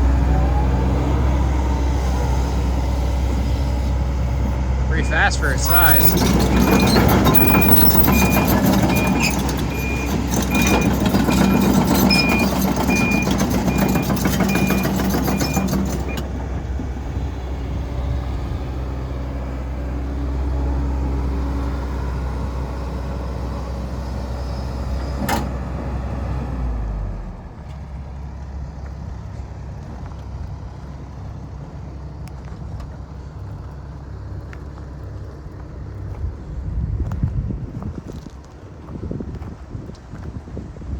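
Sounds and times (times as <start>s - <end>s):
excavator diesel engine: 0.0s - 36.9s
alarm beeping: 4.9s - 16.2s.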